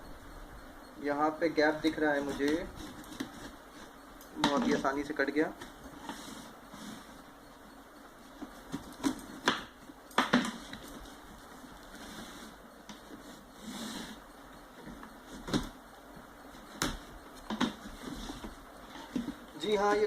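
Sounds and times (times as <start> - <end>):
sharp taps and knocks: 8.4 - 10.9.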